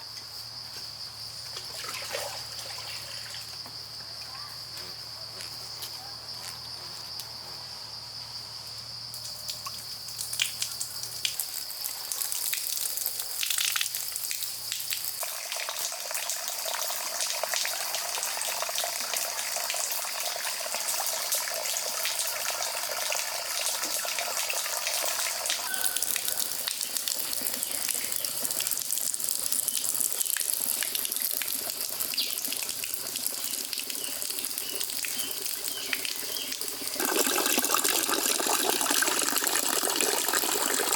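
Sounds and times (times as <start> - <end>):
water pouring and splashing: 1.6 - 3.6, 9.4 - 40.9.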